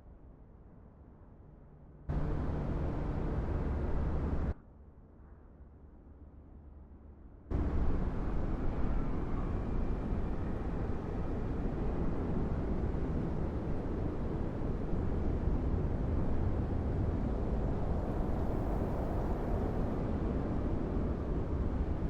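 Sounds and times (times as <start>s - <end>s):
wind buffeting microphone: 7.6s - 22.0s.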